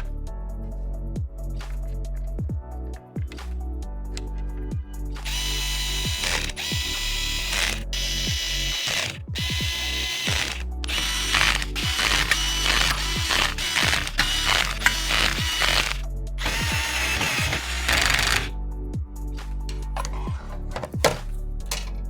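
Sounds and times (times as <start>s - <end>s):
electronic music with bass beat: 0.0s - 21.5s
mechanical ratcheting clicks: 5.3s - 18.5s.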